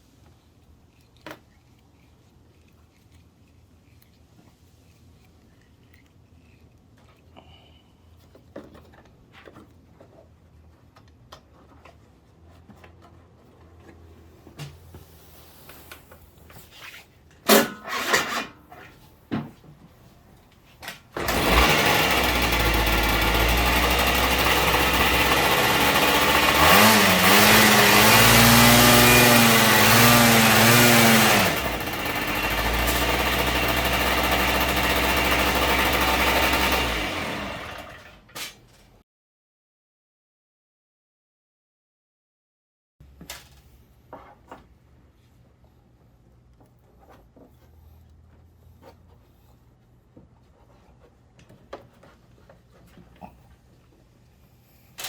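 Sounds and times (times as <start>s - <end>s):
scooter engine cranking: 17.5s - 18.5s, 21.2s - 38.3s
scooter engine revving and idling: 21.2s - 38.2s.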